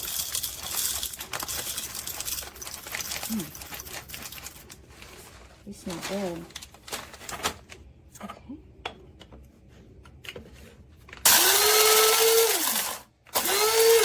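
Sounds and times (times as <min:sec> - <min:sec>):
coffee grinder motor whirring: 0:11.2 - 0:14.0.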